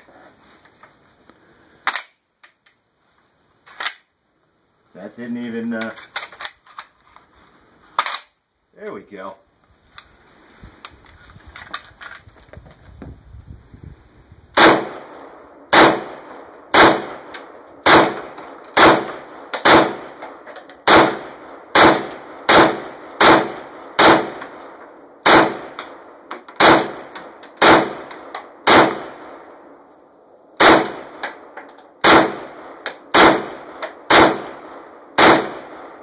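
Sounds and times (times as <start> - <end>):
gun handling noise: 1.8 - 2.8, 3.6 - 4.1, 5.6 - 8.4, 10.8 - 13.0, 31.2 - 31.9
rifle shots: 14.6 - 29.6, 30.6 - 36.0.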